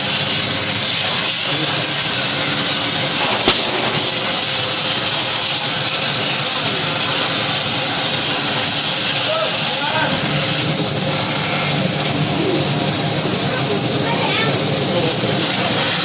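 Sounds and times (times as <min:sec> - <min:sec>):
machine cutting sheet metal: 0:01.2 - 0:07.4.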